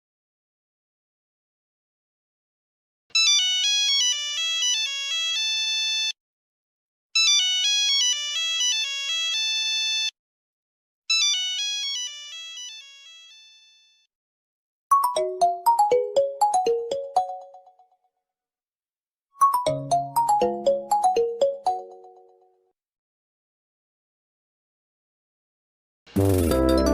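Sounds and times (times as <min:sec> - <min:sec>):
phone ringtone melody: 0:11.1 - 0:13.6, 0:14.9 - 0:17.8, 0:19.4 - 0:22.4.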